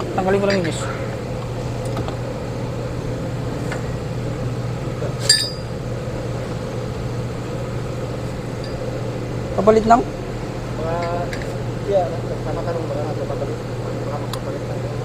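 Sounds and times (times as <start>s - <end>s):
low background hum: 0.0s - 15.0s
metal tool clinking: 5.2s - 5.7s.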